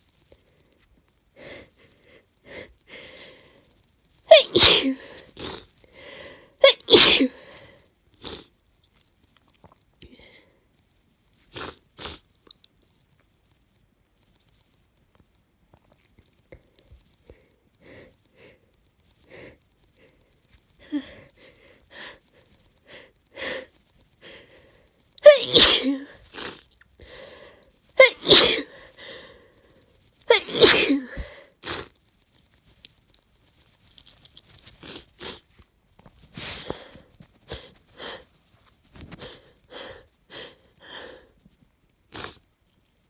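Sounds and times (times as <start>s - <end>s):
wet sniffles and breaths: 0.3s - 6.6s, 16.6s - 31.9s, 33.5s - 42.4s
gasping inhale: 1.4s - 3.7s, 5.9s - 6.6s, 26.3s - 27.7s, 28.7s - 29.9s, 39.0s - 41.4s
woman sneezing: 4.3s - 5.2s, 6.6s - 7.5s, 25.2s - 26.4s, 28.0s - 28.8s, 30.3s - 31.3s.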